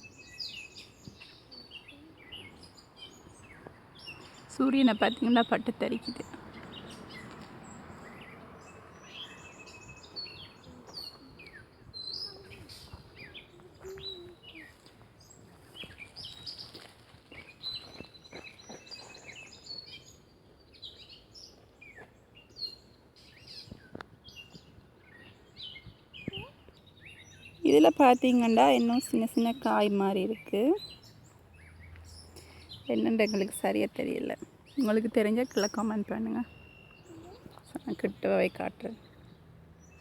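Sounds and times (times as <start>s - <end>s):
songbirds chirping and singing: 0.0s - 40.0s
bird trill: 34.7s - 38.1s.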